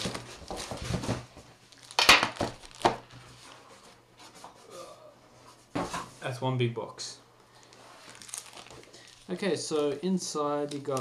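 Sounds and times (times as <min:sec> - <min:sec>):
cardboard rubbing and rustling: 0:00.0 - 0:01.5.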